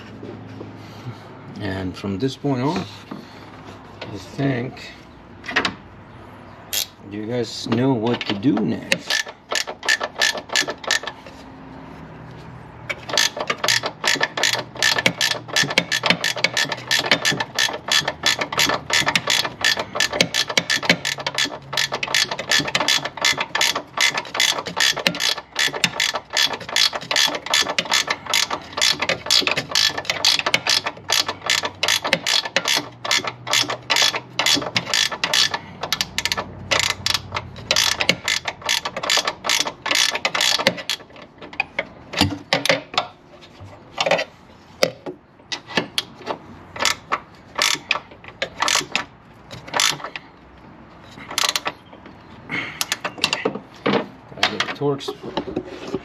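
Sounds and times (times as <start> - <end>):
ratchet wrench clicking: 6.7 - 7.0, 8.9 - 11.2, 12.9 - 42.9, 46.8 - 50.2, 51.3 - 51.8.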